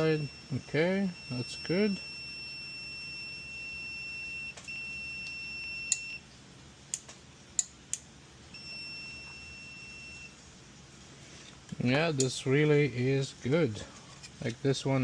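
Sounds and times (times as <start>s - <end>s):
multimeter continuity beep: 0.0s - 6.3s, 8.5s - 10.4s
sharp clicks: 6.9s - 8.1s.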